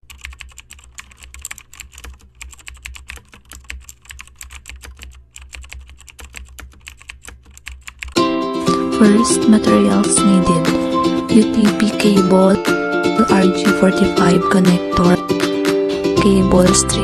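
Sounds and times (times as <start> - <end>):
keyboard typing clicks: 0.0 - 8.8.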